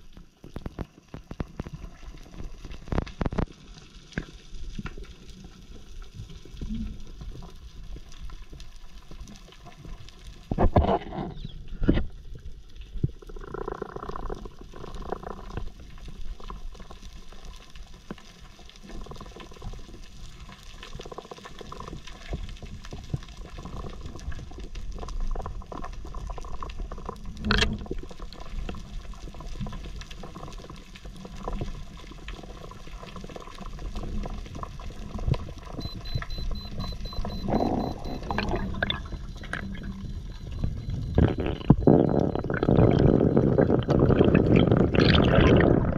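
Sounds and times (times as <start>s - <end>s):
underwater water rush: 15.0s - 45.9s.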